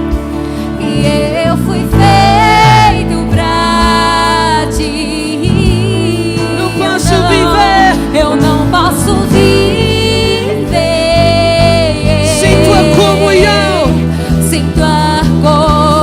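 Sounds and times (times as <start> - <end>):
gospel band playing: 0.0 - 16.0
person singing long notes: 9.0 - 14.2.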